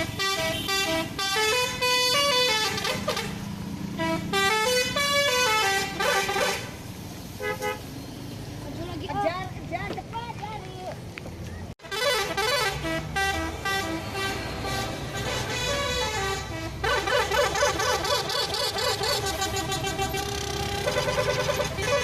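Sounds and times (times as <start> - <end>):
musical multi-tone air horns: 0.0 - 6.8, 11.8 - 22.0.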